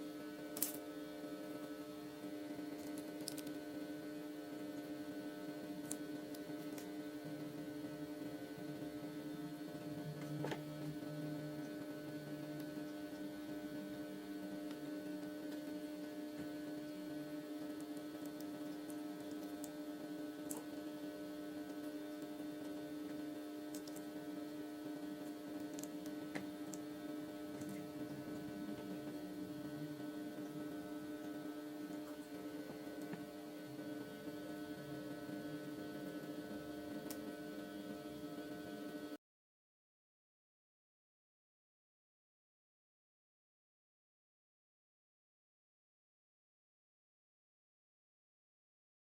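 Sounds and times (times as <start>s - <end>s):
electrical hum: 0.0s - 39.2s.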